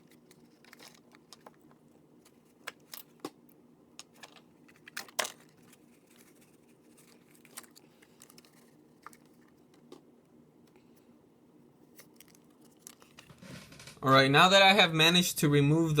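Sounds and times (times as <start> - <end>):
plastic card clicks and scrapes: 0.0 - 10.1, 11.8 - 13.8.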